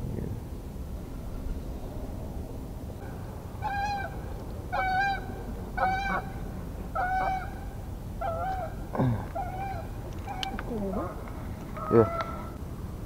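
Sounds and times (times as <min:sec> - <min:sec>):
waterfowl honking: 0:03.0 - 0:12.6.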